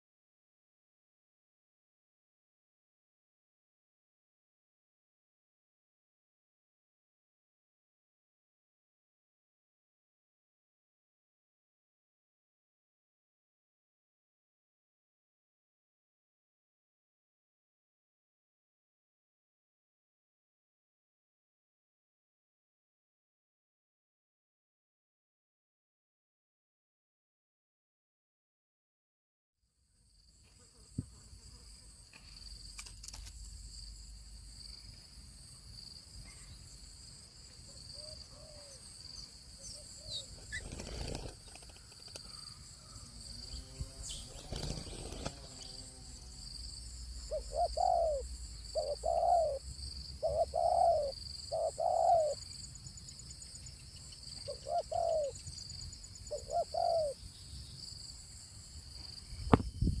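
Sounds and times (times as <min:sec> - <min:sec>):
bird hooting: 0:47.2 - 0:49.6, 0:50.2 - 0:52.4, 0:54.4 - 0:55.4, 0:56.3 - 0:57.2.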